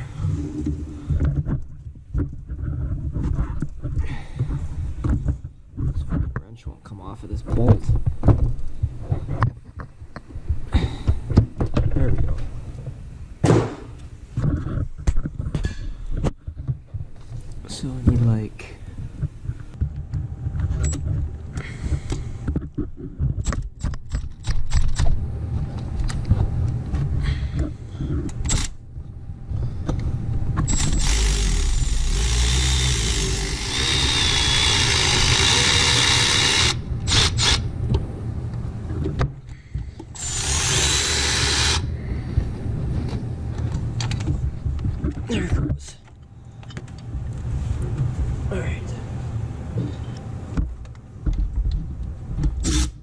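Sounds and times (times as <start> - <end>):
power tool running: 30.7 - 37.7, 40.2 - 41.9.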